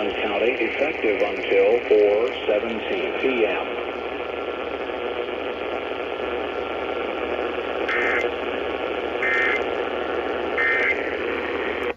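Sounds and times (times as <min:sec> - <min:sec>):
radio static hiss: 0:00.0 - 0:11.9
electronic data bursts: 0:05.4 - 0:11.9.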